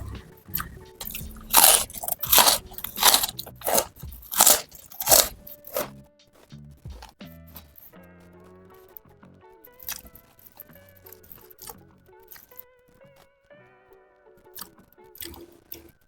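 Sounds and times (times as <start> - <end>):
chewing crunchy fried food: 0.0 - 6.0, 9.7 - 12.6, 14.5 - 16.0
quiet background music: 0.0 - 16.0.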